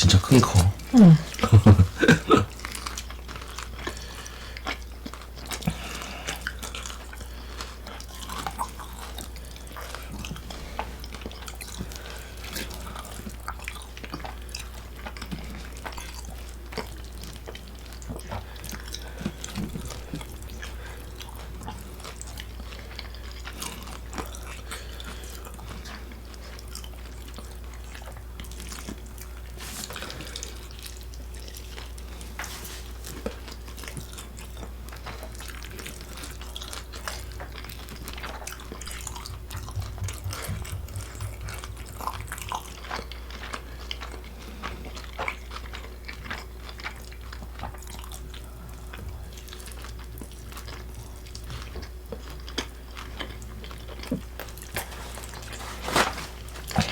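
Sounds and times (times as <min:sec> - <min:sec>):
wet sticky chewing: 0:13.0 - 0:56.9
steady low hum: 0:37.2 - 0:44.0.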